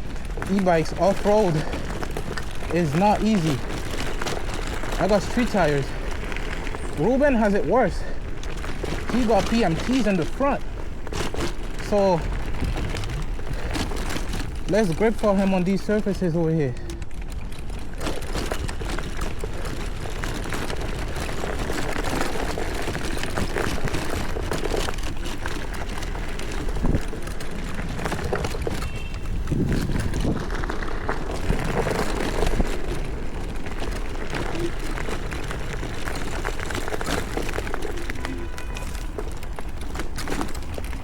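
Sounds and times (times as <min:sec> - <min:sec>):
tyre noise: 0:00.0 - 0:41.0
wind noise on microphone: 0:10.7 - 0:14.7, 0:17.1 - 0:41.0.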